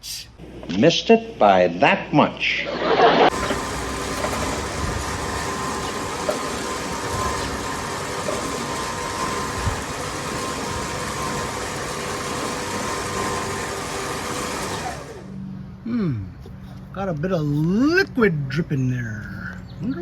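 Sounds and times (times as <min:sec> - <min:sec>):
lawn tractor engine running: 0:03.3 - 0:15.4.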